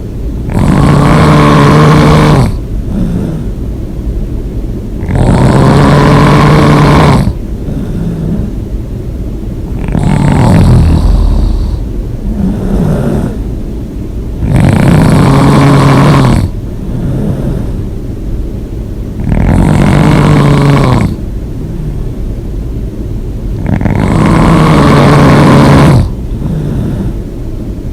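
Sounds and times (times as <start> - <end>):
person snoring loudly: 0.5 - 3.6, 5.0 - 8.5, 9.7 - 13.4, 14.4 - 17.8, 19.2 - 21.9, 23.6 - 27.2
quiet breathing: 0.6 - 3.8, 5.0 - 8.8, 9.6 - 18.0, 19.2 - 22.4, 23.4 - 27.6.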